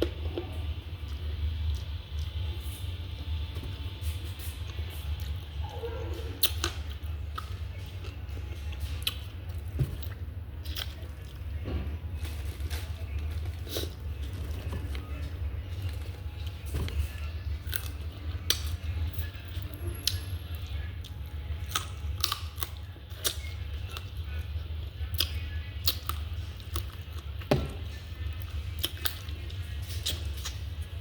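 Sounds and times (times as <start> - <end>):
steady low hum: 0.0 - 31.0
chewing with mouth clicks: 4.6 - 11.4, 17.2 - 27.5, 28.2 - 30.9.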